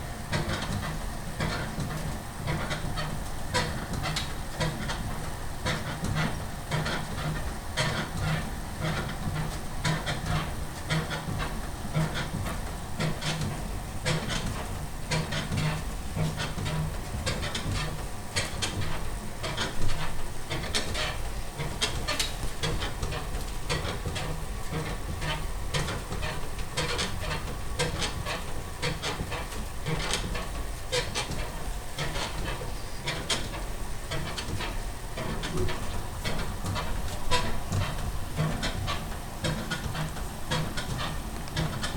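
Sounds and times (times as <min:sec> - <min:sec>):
elliptical trainer squeaking and clicking: 0:14.1 - 0:41.9.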